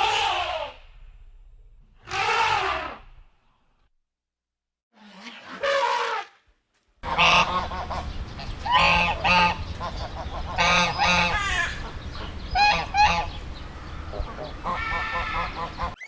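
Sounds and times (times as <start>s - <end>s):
loud honking bird calls: 7.0s - 16.0s
steady low hum: 7.0s - 16.0s.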